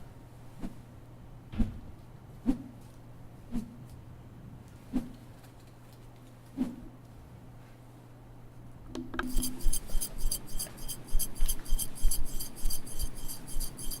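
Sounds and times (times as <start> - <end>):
low steady hum: 7.3 - 14.0.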